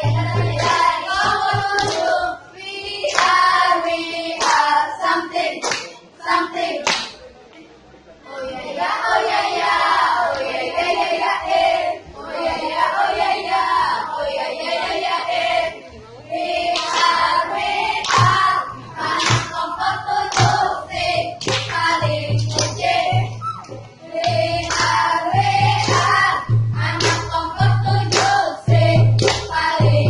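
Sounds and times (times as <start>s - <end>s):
group chanting a cheer: 0.0s - 7.1s, 8.3s - 30.0s
hand clapping: 0.5s - 2.1s, 3.0s - 3.4s, 4.4s - 4.7s, 5.6s - 6.0s, 6.8s - 7.2s, 16.8s - 17.2s, 18.0s - 19.6s, 20.3s - 20.7s, 21.4s - 22.9s, 23.6s - 25.1s, 25.8s - 26.2s, 27.0s - 27.4s, 28.0s - 28.5s, 29.2s - 29.6s.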